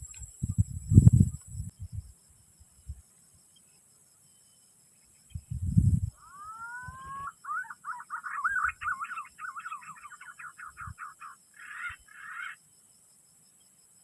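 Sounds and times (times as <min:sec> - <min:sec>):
pigeon whistling call: 0:06.2 - 0:12.5.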